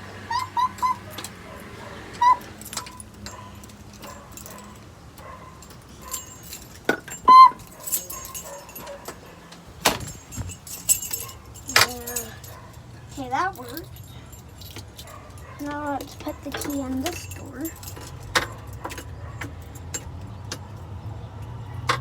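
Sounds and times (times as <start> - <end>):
keys jangling in door lock: 0.2 - 22.0
knocks from lock and door: 8.7 - 11.2.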